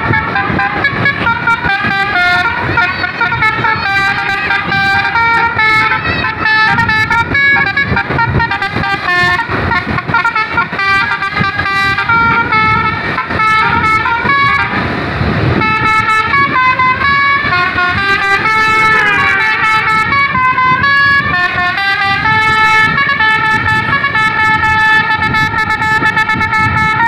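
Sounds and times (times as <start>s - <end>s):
musical bus horn melody: 0.0s - 27.0s
rush of noise: 0.0s - 27.0s
low rumble: 12.0s - 25.6s.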